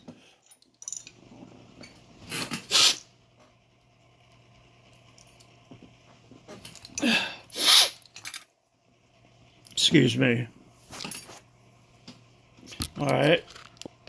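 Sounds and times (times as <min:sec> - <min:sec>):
person blowing nose: 0:02.7 - 0:03.0, 0:07.1 - 0:08.0.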